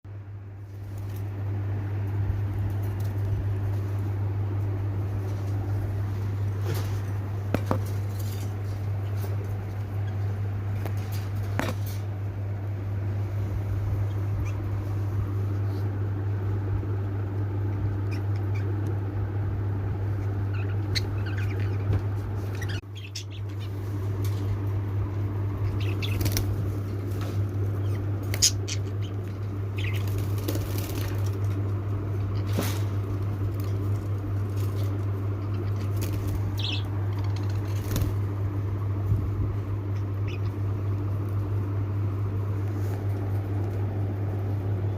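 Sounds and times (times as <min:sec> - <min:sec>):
steady low hum: 0:00.1 - 0:44.9
birds moving in cage: 0:00.6 - 0:44.9
bird chirp: 0:20.1 - 0:23.9, 0:25.5 - 0:26.4, 0:27.7 - 0:30.4, 0:35.4 - 0:37.5, 0:39.9 - 0:40.7.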